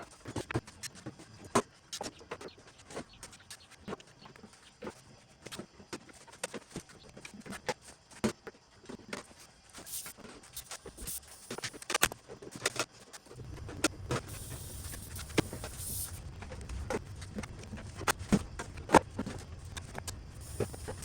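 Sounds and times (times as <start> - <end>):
steady low hum: 13.3 - 21.0.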